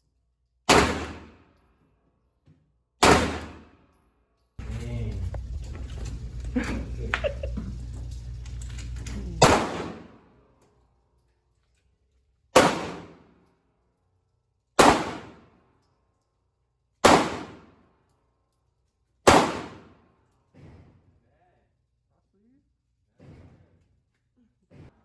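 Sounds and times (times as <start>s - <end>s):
gunshots with short echo: 3.0s - 3.7s, 9.4s - 10.2s, 12.6s - 13.2s, 14.8s - 15.4s, 19.3s - 19.9s.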